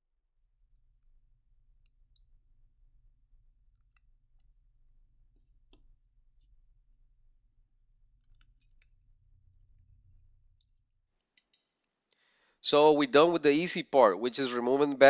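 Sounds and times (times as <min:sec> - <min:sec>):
faint low hum: 0:00.1 - 0:11.6
small sharp clicks: 0:08.2 - 0:09.0, 0:09.9 - 0:12.3.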